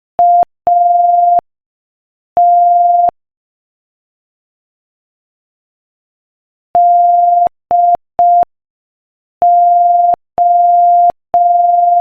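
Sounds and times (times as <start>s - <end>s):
morse code beeps: 9.4s - 12.0s.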